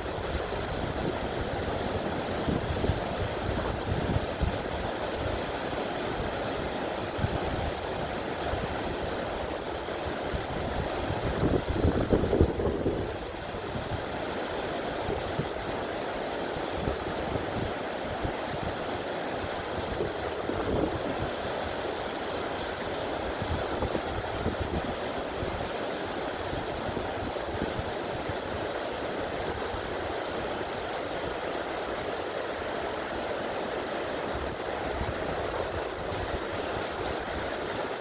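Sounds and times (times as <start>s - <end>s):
wind buffeting microphone: 10.4s - 13.9s.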